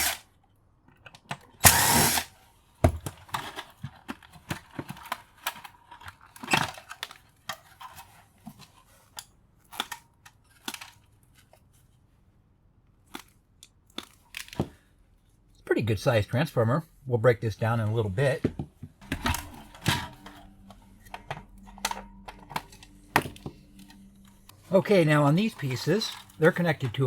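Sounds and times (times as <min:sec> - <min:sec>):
power drill whirring: 0:00.0 - 0:00.2, 0:01.6 - 0:02.4
screws and parts clattering: 0:00.0 - 0:00.2, 0:02.9 - 0:11.5, 0:19.0 - 0:27.0.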